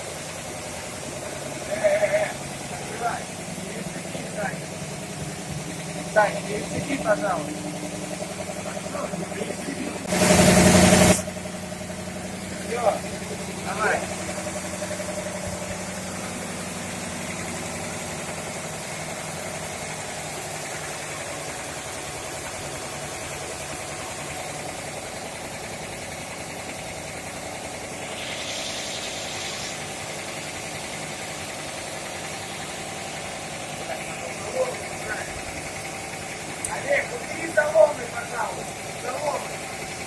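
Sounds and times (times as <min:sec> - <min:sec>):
fire pump engine running: 0:00.0 - 0:40.0
short hiss: 0:28.0 - 0:30.0.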